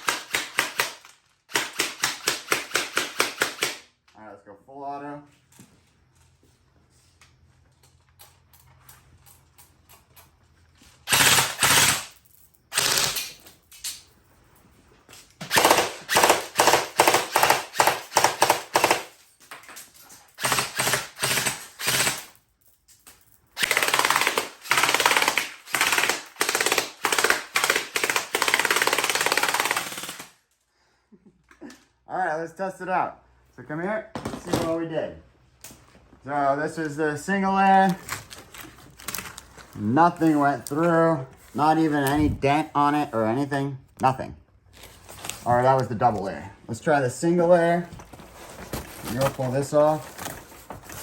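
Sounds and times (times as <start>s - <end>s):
airsoft gun rapid fire: 0.0s - 3.8s, 11.1s - 13.2s, 15.5s - 19.1s, 20.4s - 22.3s, 23.6s - 30.4s.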